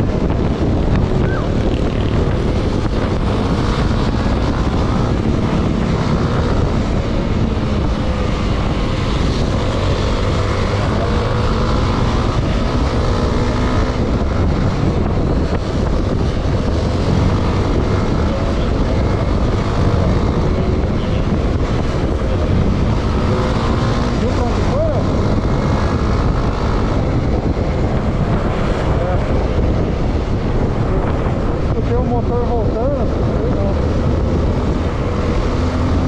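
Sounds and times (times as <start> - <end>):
motorcycle engine running: 0.0 - 36.0
wind on microphone: 0.0 - 36.0.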